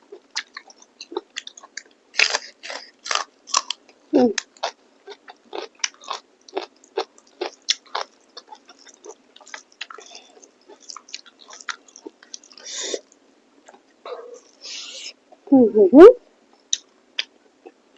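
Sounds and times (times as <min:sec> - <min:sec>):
chewing and biting food: 0:00.1 - 0:03.8, 0:04.4 - 0:12.7
wet crunchy mouth clicks: 0:04.4 - 0:14.9.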